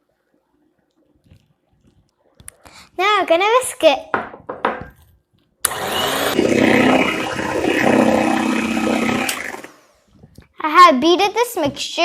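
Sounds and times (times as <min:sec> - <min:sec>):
electric hand mixer running: 0:05.7 - 0:09.9.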